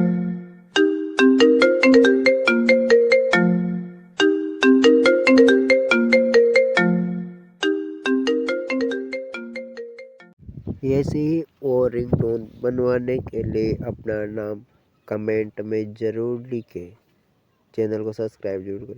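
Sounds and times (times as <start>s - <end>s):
phone ringtone melody: 0.0s - 10.4s.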